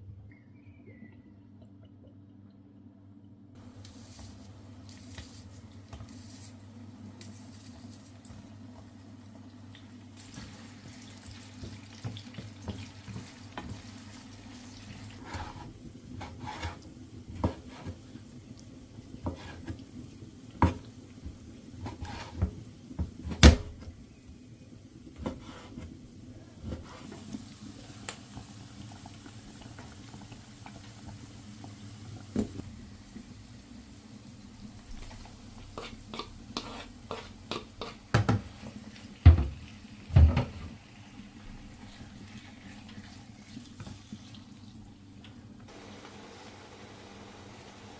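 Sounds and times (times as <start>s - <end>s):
kitchen knocks and clatters: 21.8s - 24.0s, 35.8s - 40.8s.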